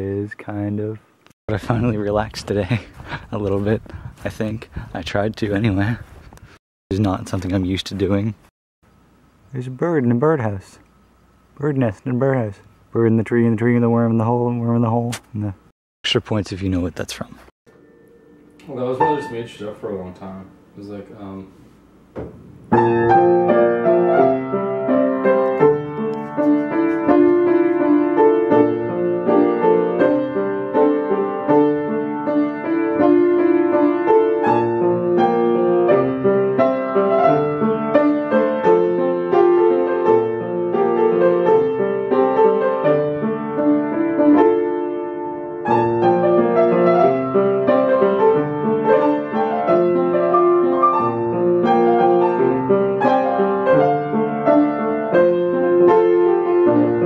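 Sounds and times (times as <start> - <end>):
piano playing chords and melody: 17.7 - 19.8, 22.2 - 57.0.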